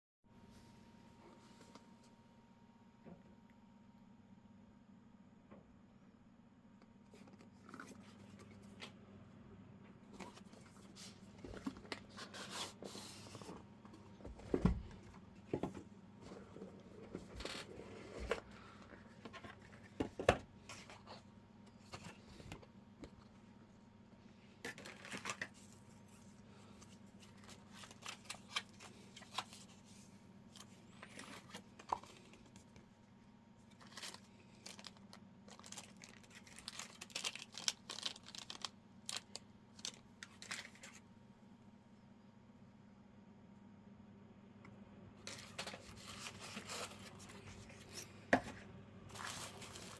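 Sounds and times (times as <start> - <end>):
packaging rustling and tearing: 24.7 - 26.2, 26.8 - 29.9, 33.7 - 41.0, 49.1 - 49.9.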